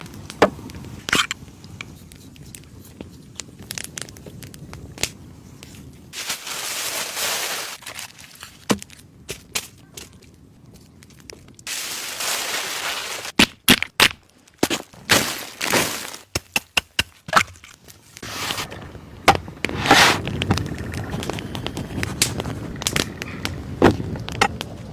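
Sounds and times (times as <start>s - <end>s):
crunching and crinkling: 5.6s - 13.4s, 14.1s - 18.8s
steady hiss: 6.2s - 7.8s, 11.7s - 13.4s.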